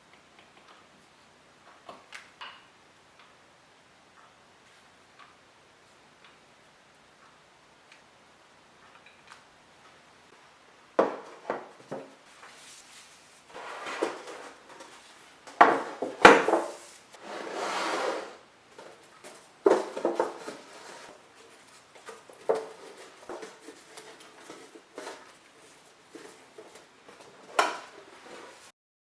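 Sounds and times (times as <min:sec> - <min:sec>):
scraping: 0:12.4 - 0:18.4, 0:19.3 - 0:28.7
utensils knocking on wood: 0:15.5 - 0:16.8, 0:19.2 - 0:21.2.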